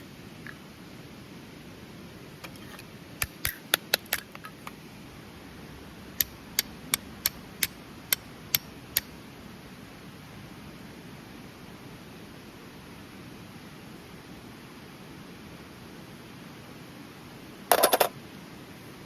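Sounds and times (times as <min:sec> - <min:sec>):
sharp high clicking strikes: 0:06.2 - 0:09.2.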